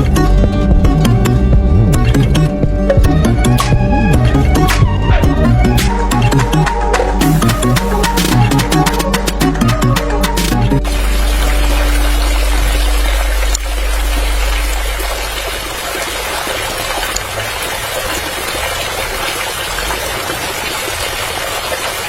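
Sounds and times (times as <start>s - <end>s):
low motor hum: 0.0s - 17.7s
water running and splashing: 4.6s - 22.0s.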